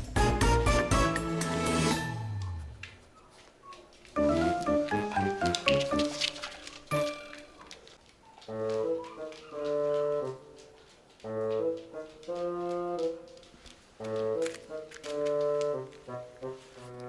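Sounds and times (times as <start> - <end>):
horn-like melody: 0.1 - 2.8, 4.2 - 6.2, 14.0 - 17.0.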